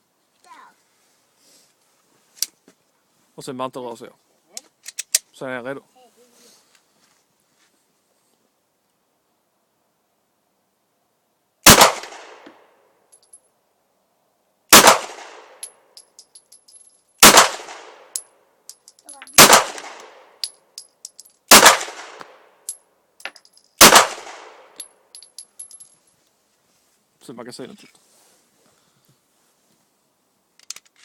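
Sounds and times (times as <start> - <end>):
pistol shots: 11.6 - 12.4, 14.7 - 15.6, 17.2 - 18.1, 19.3 - 20.3, 21.5 - 22.4, 23.8 - 24.8
light metallic clinks: 13.1 - 13.5, 15.6 - 17.2, 18.2 - 19.4, 20.4 - 21.5, 22.6 - 23.8, 24.7 - 26.2.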